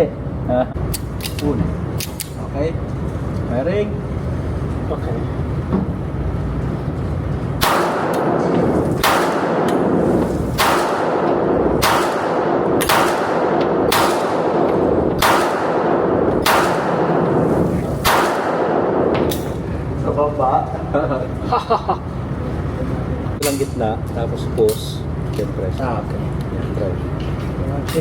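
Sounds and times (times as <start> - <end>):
gunshots with echo: 7.6 - 19.6.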